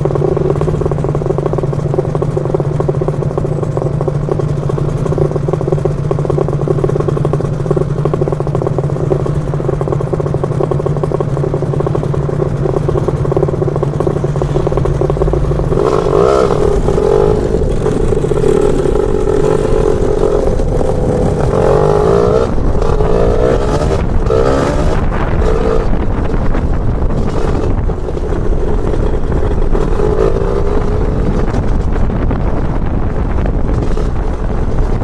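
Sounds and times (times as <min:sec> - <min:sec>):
scooter engine revving: 0:00.0 - 0:35.0
wind on microphone: 0:12.4 - 0:35.0.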